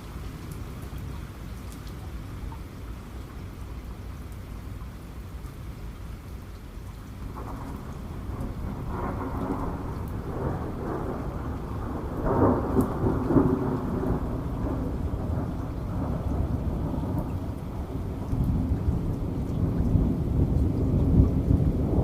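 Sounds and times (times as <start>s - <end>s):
steady rain: 0.0s - 22.0s
rolling thunder: 7.3s - 22.0s.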